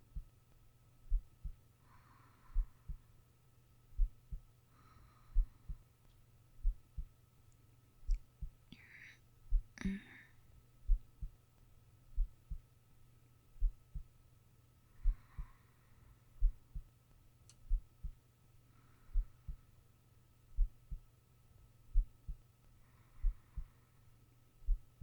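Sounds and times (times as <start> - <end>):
faint high hum: 0.0 - 25.0
heartbeat: 1.1 - 1.6, 2.5 - 3.1, 3.9 - 4.5, 5.3 - 5.8, 6.6 - 7.2, 8.1 - 8.7, 9.5 - 9.8, 10.8 - 11.4, 12.1 - 12.6, 13.6 - 14.1, 15.0 - 15.5, 16.4 - 16.9, 17.6 - 18.2, 19.1 - 19.6, 20.5 - 21.1, 21.9 - 22.4, 23.2 - 23.7, 24.6 - 25.0
soft breathing: 1.1 - 3.2, 4.0 - 7.1, 8.1 - 11.0, 14.8 - 16.9, 17.7 - 19.9, 21.9 - 25.0.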